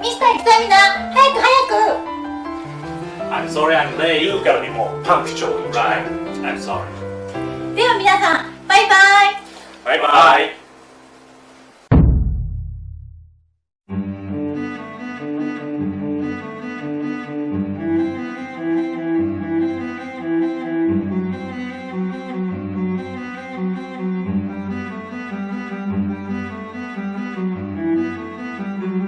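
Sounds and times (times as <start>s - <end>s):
low bowed strings music: 1.6s - 8.7s, 13.9s - 29.0s.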